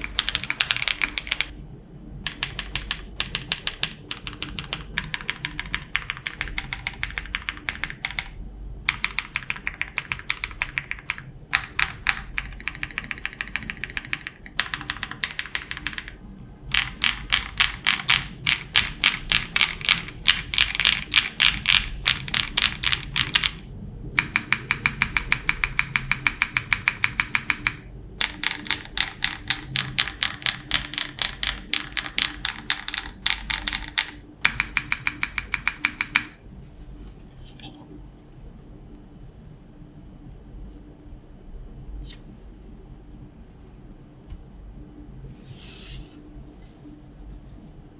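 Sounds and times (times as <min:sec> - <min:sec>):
mechanical keyboard typing: 0:00.0 - 0:01.6, 0:02.2 - 0:36.4.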